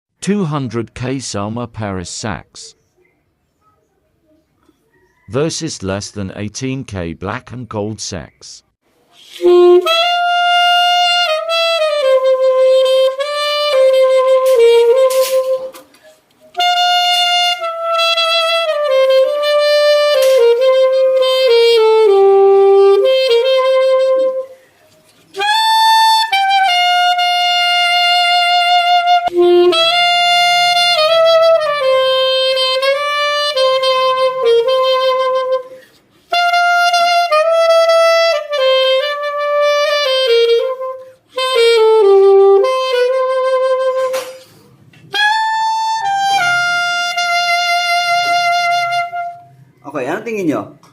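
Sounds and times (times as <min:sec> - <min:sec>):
saxophone playing slow melody: 0:09.2 - 0:24.7, 0:25.3 - 0:49.8.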